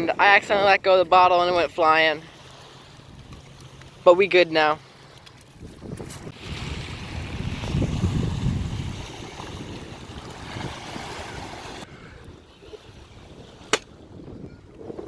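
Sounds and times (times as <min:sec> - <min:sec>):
water washing around a boat: 0:00.0 - 0:14.2
wind buffeting microphone: 0:05.4 - 0:15.0.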